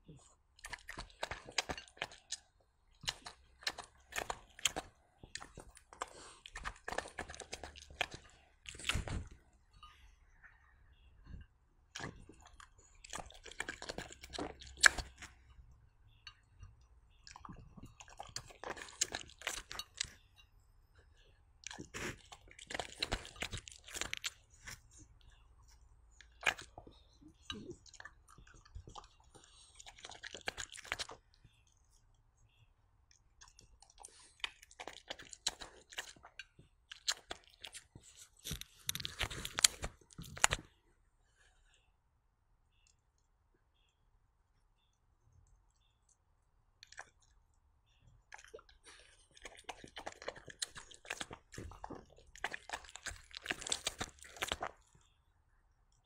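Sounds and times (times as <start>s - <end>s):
dog chewing: 3.0s - 9.3s, 21.6s - 25.1s, 48.3s - 54.9s.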